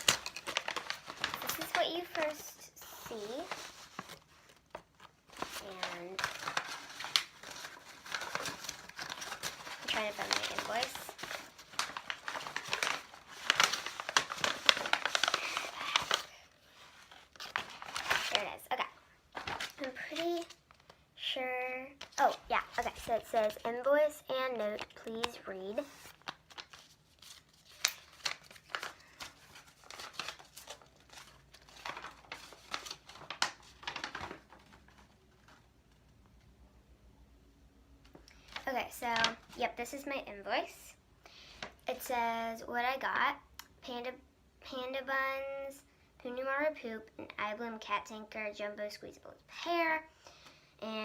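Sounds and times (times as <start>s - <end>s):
crinkly packaging crumpled by hand: 0.0s - 21.0s, 24.6s - 36.0s, 38.4s - 39.8s.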